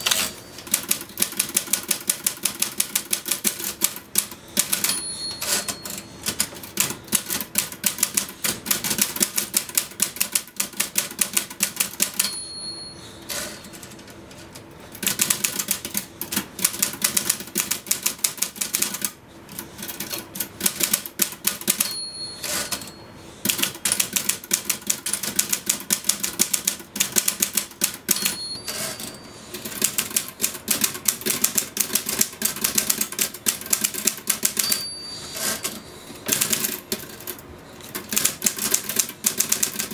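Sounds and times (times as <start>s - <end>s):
typewriter margin bell ding: 0.0s - 0.6s, 4.6s - 6.4s, 12.0s - 14.0s, 21.6s - 23.1s, 28.1s - 29.5s, 34.4s - 35.9s
typewriter keys clattering: 0.0s - 12.4s, 13.3s - 22.9s, 23.5s - 34.8s, 35.4s - 39.9s.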